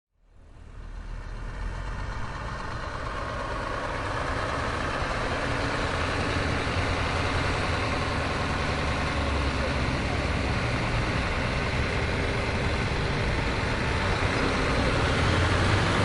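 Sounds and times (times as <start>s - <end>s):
road noise: 0.2s - 16.0s
truck engine drone: 0.2s - 16.0s.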